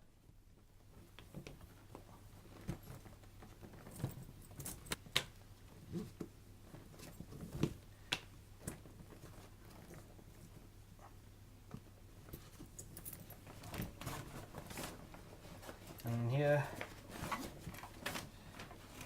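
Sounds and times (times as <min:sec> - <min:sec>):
gear rummaged in a pack: 0:12.5 - 0:19.0.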